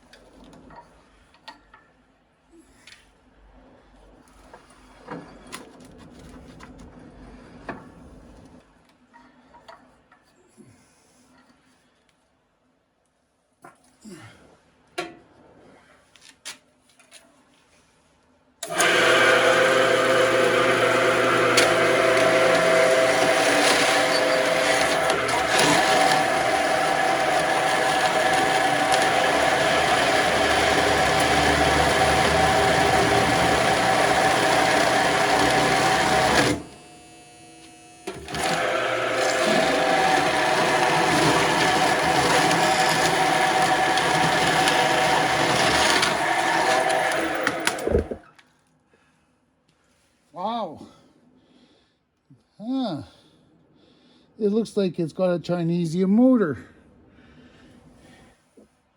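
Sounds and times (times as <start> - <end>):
band saw whining: 18.6 - 48.2.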